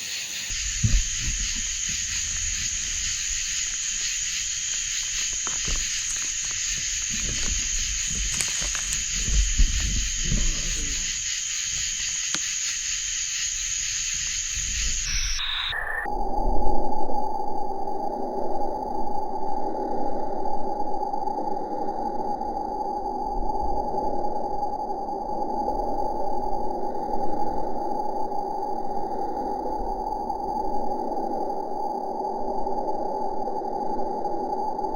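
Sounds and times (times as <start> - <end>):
insects and frogs trilling: 0.0 - 16.1
handling and walking rumbles: 0.5 - 15.1.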